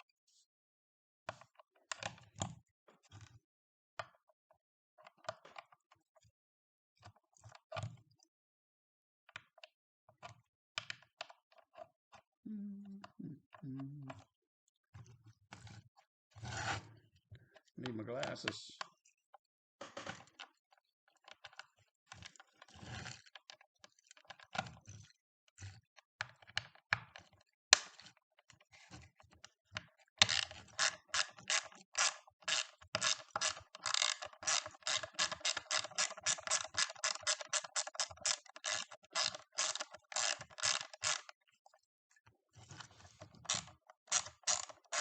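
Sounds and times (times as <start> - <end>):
handling scrapes: 16.4 - 16.9
ratcheting hand driver clicking: 30.2 - 41.3.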